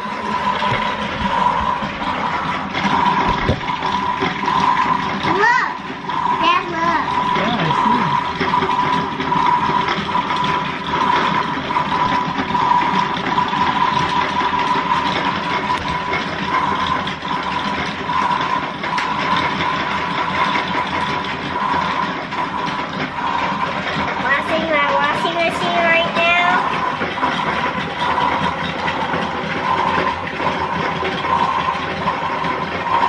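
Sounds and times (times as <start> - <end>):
constant high whine: 0.0 - 33.0
toy washing machine motor whirring: 0.0 - 33.0.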